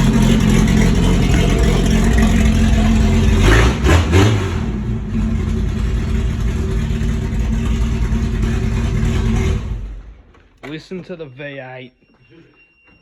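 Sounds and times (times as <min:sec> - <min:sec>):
loud car engine idling: 0:00.0 - 0:10.4
engine throttle blips: 0:00.0 - 0:11.0.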